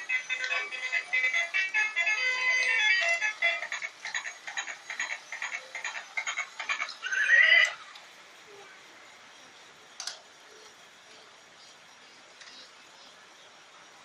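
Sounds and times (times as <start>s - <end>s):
electronic toy pulses and squeal: 2.2s - 7.8s.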